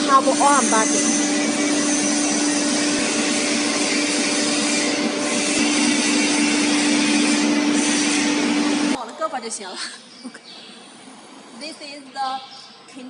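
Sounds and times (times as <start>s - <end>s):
cnc router machinery humming: 0.0s - 9.0s
high-pitched machine tone: 0.0s - 9.0s.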